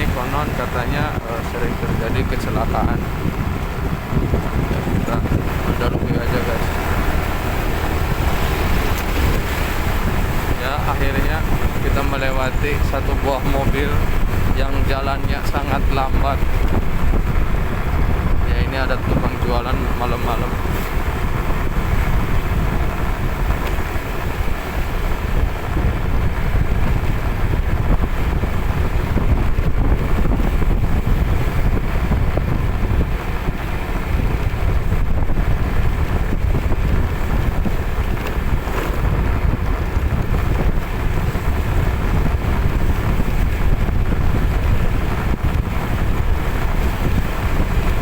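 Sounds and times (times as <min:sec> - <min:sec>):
vehicle road and engine noise: 0:00.0 - 0:48.0
wind buffeting microphone: 0:00.0 - 0:48.0.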